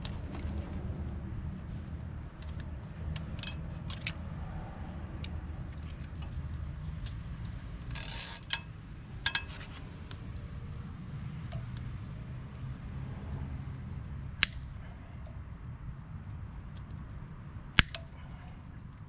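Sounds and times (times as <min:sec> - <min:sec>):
low steady rumble: 0:00.0 - 0:19.0
zip tie ratcheting rasp: 0:07.9 - 0:08.6.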